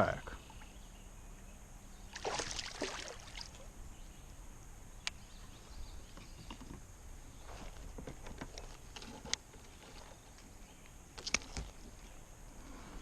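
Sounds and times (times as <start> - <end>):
water splashing: 2.1 - 3.7.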